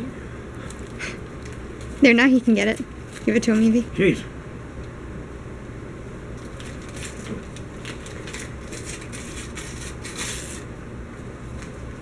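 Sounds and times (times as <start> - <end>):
wrapping paper crinkling and tearing: 2.8 - 3.7, 6.4 - 10.7.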